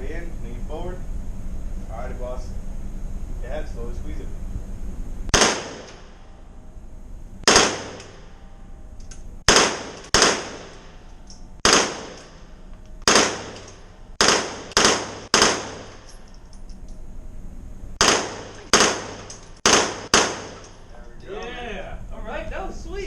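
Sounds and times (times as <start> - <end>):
gunshots ringing indoors: 5.3 - 6.2, 7.4 - 8.4, 9.4 - 16.2, 18.0 - 20.8.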